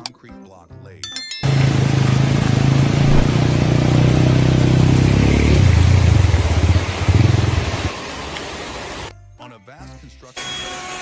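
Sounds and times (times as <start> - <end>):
engine running loudly: 1.5 - 8.0.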